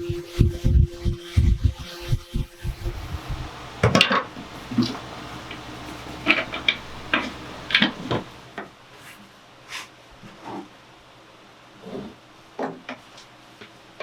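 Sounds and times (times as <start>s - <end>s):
low steady hum: 0.0s - 9.6s.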